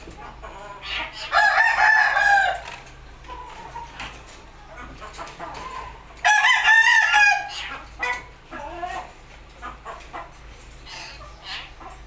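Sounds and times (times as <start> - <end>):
bird calling: 10.8 - 12.0.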